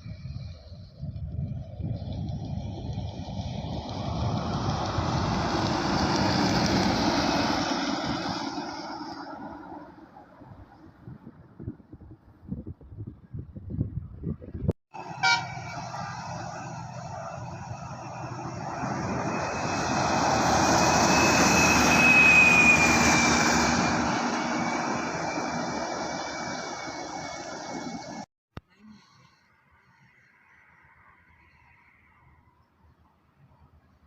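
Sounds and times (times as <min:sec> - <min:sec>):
bus driving past: 0:00.0 - 0:11.6, 0:15.0 - 0:28.3.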